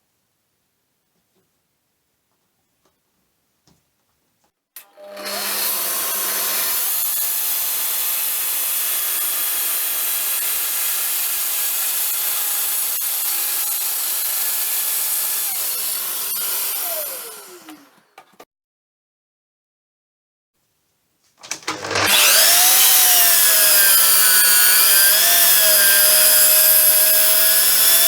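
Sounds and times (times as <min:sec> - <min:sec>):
orbital sander on wood: 0:05.0 - 0:18.0, 0:21.9 - 0:28.0.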